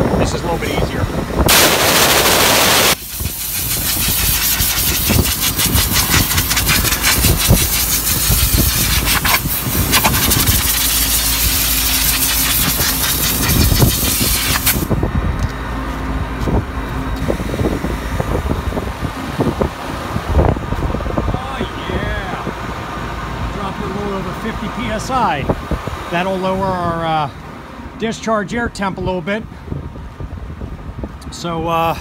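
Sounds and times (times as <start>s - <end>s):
condenser unit humming: 0.0s - 29.6s
loud gas blast: 1.4s - 15.0s
nitrogen hissing from blow nozzle: 1.5s - 15.0s.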